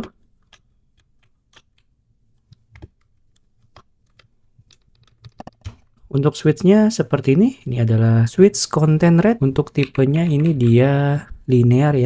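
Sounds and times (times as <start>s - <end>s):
plastic clicks and taps: 0.0s - 6.0s.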